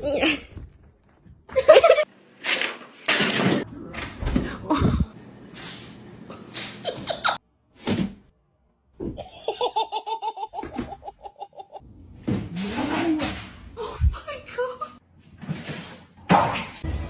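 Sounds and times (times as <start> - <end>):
person laughing: 9.2 - 11.8.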